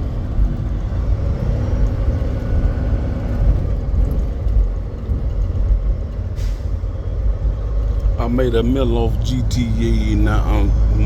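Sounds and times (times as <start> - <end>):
truck engine and road rumble: 0.0 - 11.0.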